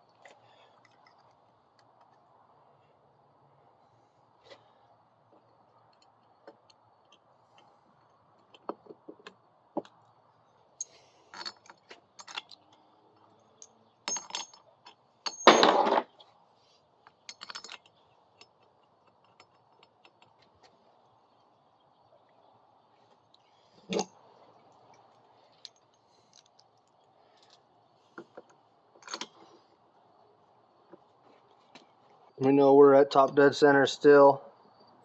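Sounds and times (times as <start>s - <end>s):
tools clinking on a workbench: 13.6s - 16.3s, 17.2s - 20.4s.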